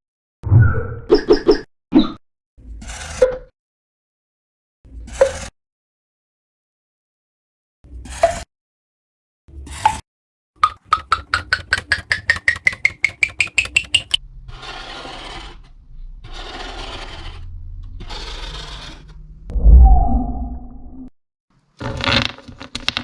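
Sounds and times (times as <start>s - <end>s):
quick sharp ratchet clicks: 10.6s - 14.2s
tool scraping: 10.6s - 17.4s.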